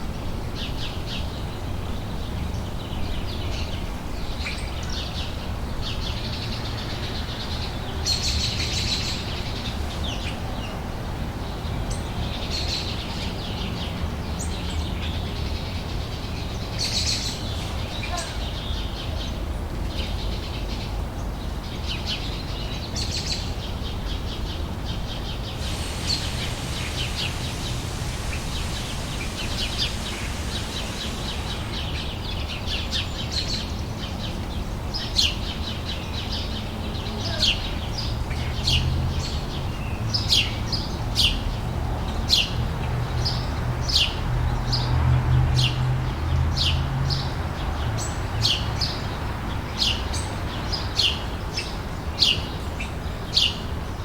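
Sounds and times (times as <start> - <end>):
low background rumble: 25.5 - 33.3
birds chirping: 25.6 - 32.8.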